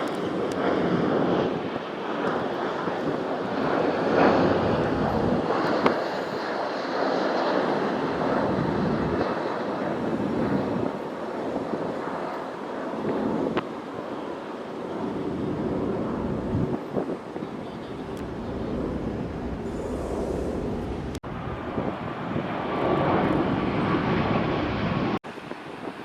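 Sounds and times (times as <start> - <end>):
jet engines rushing: 0.0 - 26.0.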